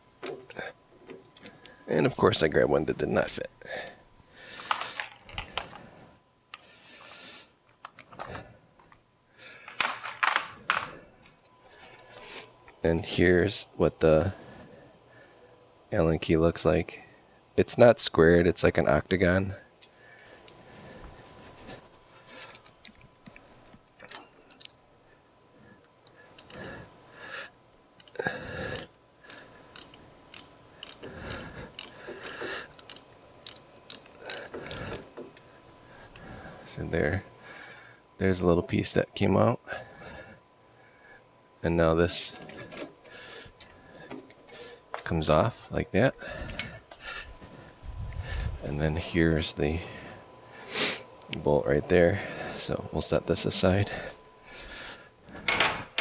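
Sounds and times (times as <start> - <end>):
metal keys clinking and rattling: 4.7 - 5.8, 9.6 - 11.1.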